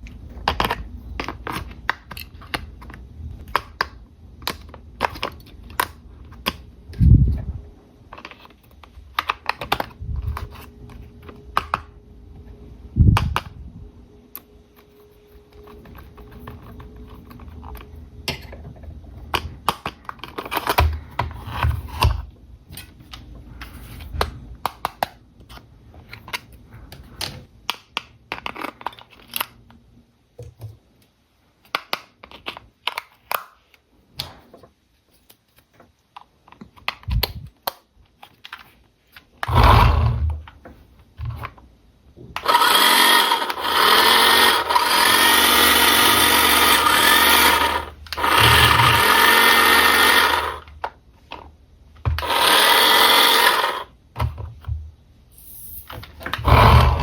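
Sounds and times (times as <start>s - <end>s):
plastic and cardboard clicks: 24.0s - 29.6s.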